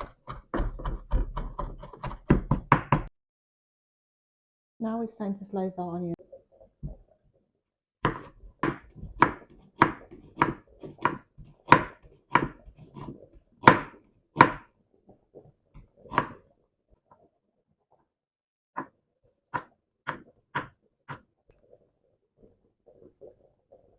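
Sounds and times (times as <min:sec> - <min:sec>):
knife slicing onion on board: 0:00.0 - 0:03.1, 0:08.1 - 0:14.7, 0:19.6 - 0:21.3.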